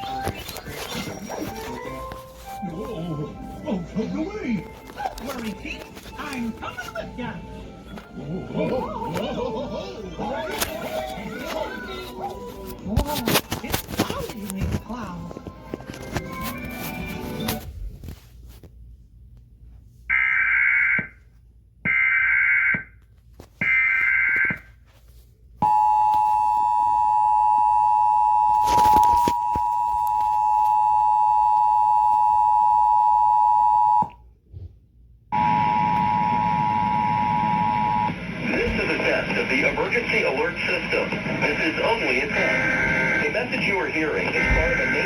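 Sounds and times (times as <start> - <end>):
static crackle: 0.0 - 2.2.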